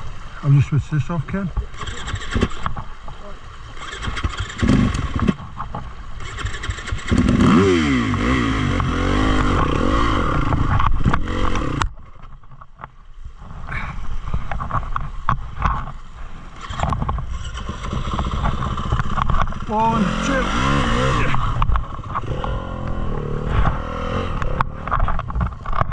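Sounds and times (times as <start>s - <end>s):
dirt bike engine revving: 1.7s - 2.7s, 3.8s - 5.4s, 6.2s - 11.9s, 16.6s - 25.4s.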